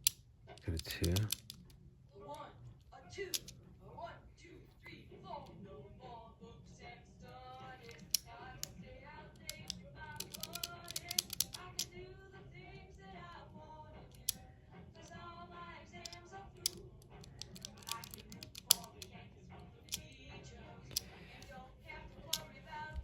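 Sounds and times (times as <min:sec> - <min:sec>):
padlock dial and shackle clicking: 0:00.0 - 0:01.8, 0:03.3 - 0:03.6, 0:07.5 - 0:12.0, 0:14.1 - 0:15.2, 0:15.9 - 0:19.2, 0:19.8 - 0:20.2, 0:20.9 - 0:21.6, 0:22.2 - 0:23.0
faint singing: 0:02.0 - 0:23.0.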